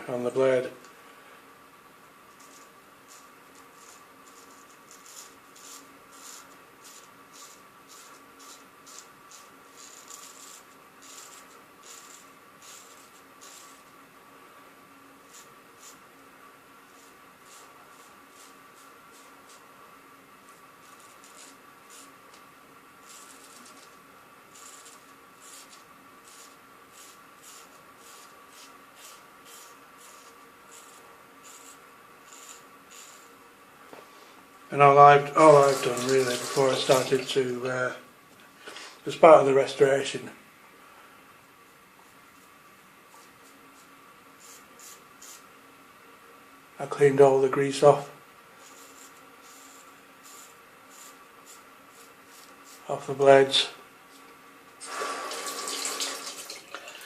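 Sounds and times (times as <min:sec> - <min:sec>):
faint steady hum: 0:00.0 - 0:57.0
razor scraping stubble: 0:02.3 - 0:13.9, 0:20.5 - 0:22.2, 0:23.0 - 0:33.3, 0:48.6 - 0:53.1.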